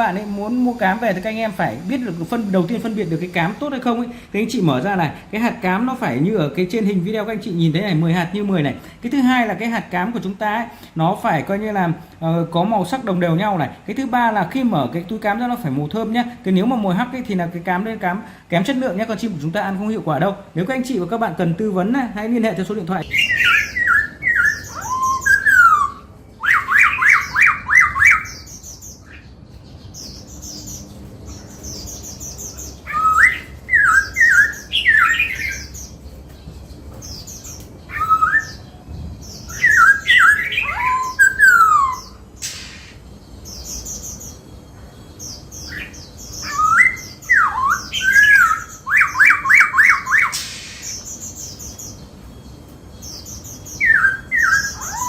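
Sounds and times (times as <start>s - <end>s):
bird singing slurred whistles: 23.0s - 29.3s, 32.6s - 35.8s, 37.9s - 43.0s, 45.6s - 51.3s, 53.7s - 55.0s.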